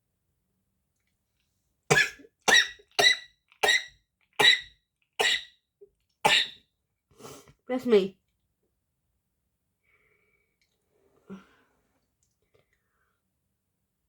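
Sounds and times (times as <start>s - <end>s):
woman coughing: 1.9s - 3.8s.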